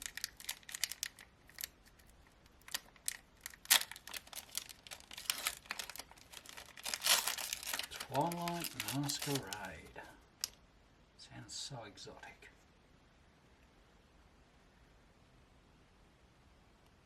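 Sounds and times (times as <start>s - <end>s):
foil wrapper crinkling: 0.0s - 10.6s
trading cards being handled: 0.0s - 10.6s.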